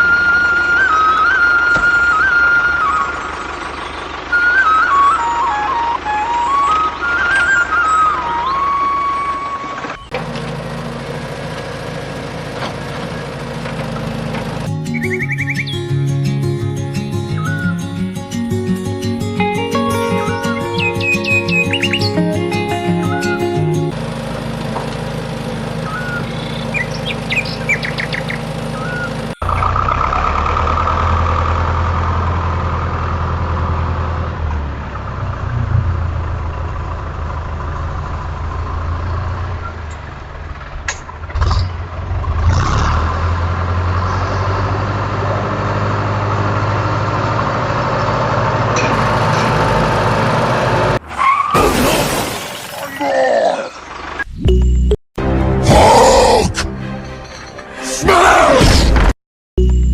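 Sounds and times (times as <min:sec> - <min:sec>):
birds chirping: 0:02.8 - 0:05.6, 0:06.2 - 0:10.2, 0:14.9 - 0:15.9, 0:17.3 - 0:18.0, 0:20.0 - 0:23.9, 0:25.8 - 0:29.7.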